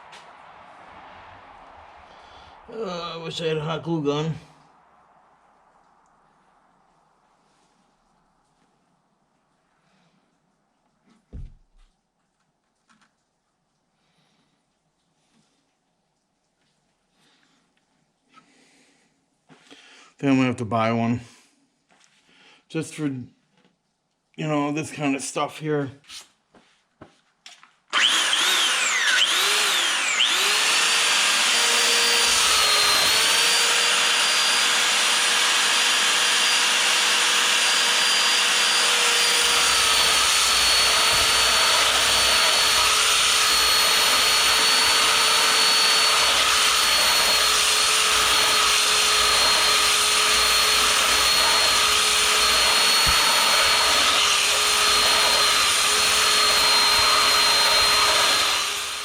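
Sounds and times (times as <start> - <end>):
power tool motor whining: 27.9 - 59.0.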